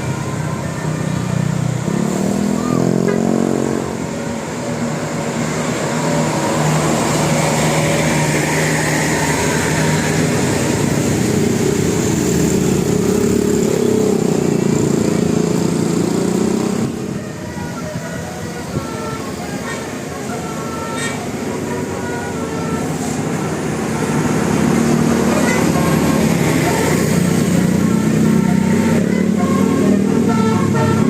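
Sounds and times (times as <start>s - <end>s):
vehicle engines in passing traffic: 0.0s - 31.0s.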